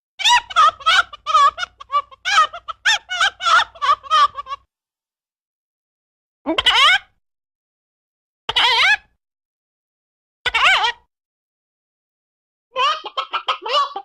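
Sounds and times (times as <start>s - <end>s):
chicken squawk: 0.2s - 4.6s, 12.8s - 14.0s.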